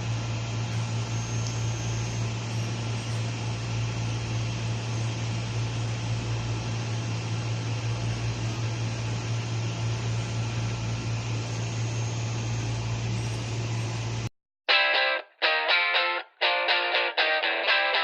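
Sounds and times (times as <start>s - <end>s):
printer fans whirring: 0.0s - 14.3s
distorted electric guitar music: 14.7s - 18.0s.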